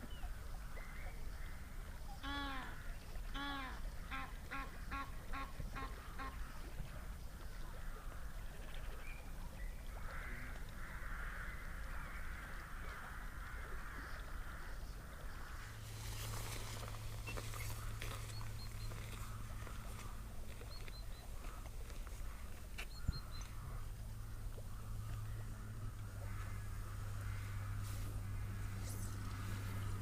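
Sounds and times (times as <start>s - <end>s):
waterfowl honking calls: 2.2s - 6.7s, 15.6s - 30.0s.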